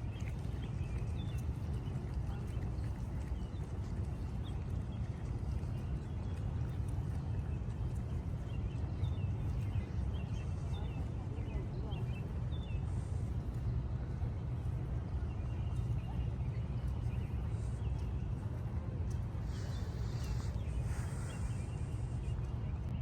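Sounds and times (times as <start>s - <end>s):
steady low city rumble: 0.0s - 23.0s
small birds chirping: 0.1s - 23.0s
hiss: 19.5s - 21.9s.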